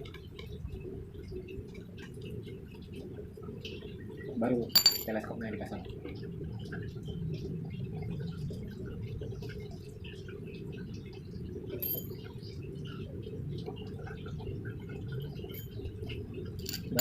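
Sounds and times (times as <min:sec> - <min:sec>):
steady low hum: 0:00.0 - 0:17.0
sharp metallic clink: 0:04.8 - 0:05.1, 0:16.6 - 0:17.0.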